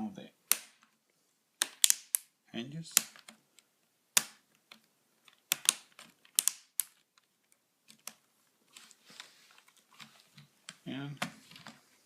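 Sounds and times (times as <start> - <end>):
plastic parts clicking: 1.6 - 2.3, 2.9 - 8.2.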